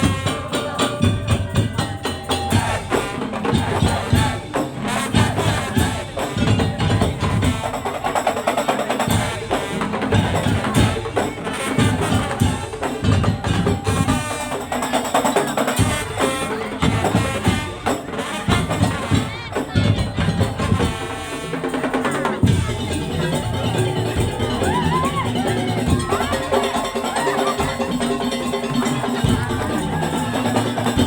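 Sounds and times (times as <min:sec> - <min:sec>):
wooden slit drums and drums: 0:00.0 - 0:31.0.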